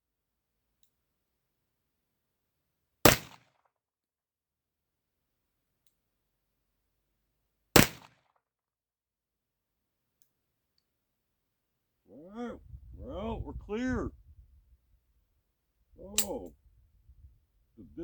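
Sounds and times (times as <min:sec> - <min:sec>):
pistol shots: 0:03.1 - 0:03.4, 0:07.8 - 0:08.1.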